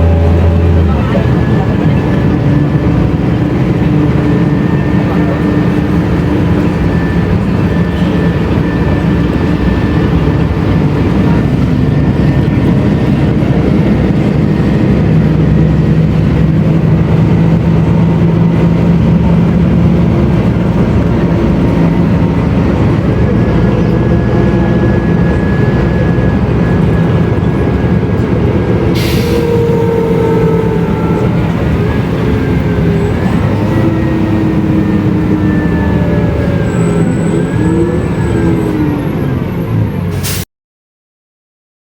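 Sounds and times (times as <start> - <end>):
bus diesel engine running: 0.0 - 40.4.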